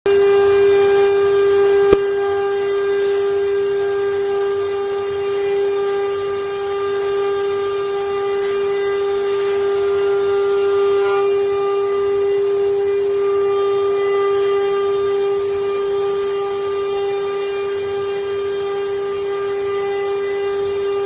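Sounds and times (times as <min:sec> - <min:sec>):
machine spindle whining: 0:00.1 - 0:21.0
sharp click: 0:01.9 - 0:02.1.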